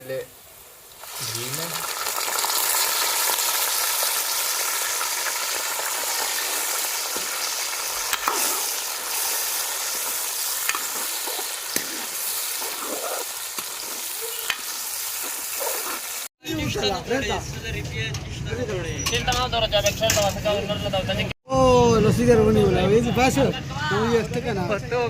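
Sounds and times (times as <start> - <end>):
liver frying in hot fat: 0.0 - 16.3.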